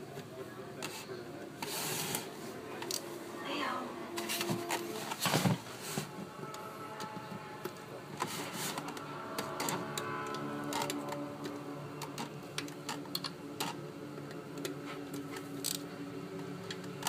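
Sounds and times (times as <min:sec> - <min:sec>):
soft television music: 0:00.0 - 0:17.0.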